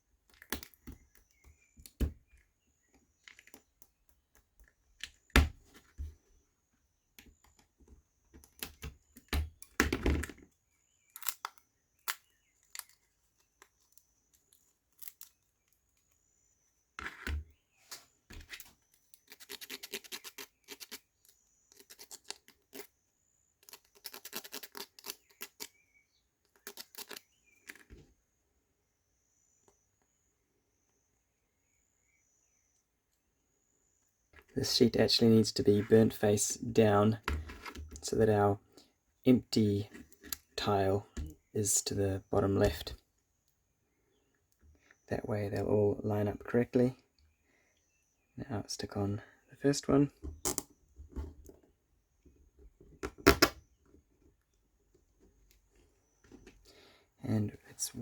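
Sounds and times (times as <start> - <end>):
scratchy rubbing: 19.3 - 21.1.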